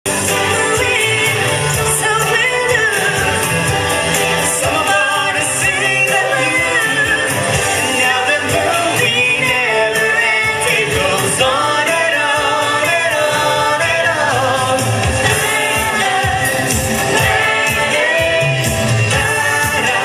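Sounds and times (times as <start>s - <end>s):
music with voices singing together: 0.1s - 20.0s.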